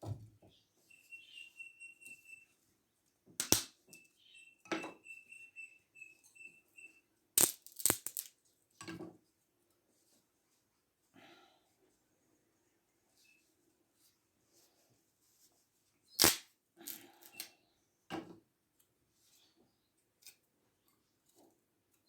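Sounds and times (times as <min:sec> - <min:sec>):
faint high-pitched peeping: 0:00.0 - 0:03.1, 0:03.9 - 0:07.2, 0:12.2 - 0:13.6
sharp cracks and knocks: 0:03.4 - 0:03.8, 0:07.4 - 0:08.3, 0:16.2 - 0:16.5.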